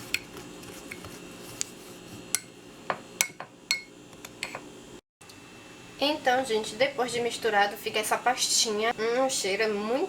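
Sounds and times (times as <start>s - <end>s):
spoon clinking against container: 3.2s - 4.6s.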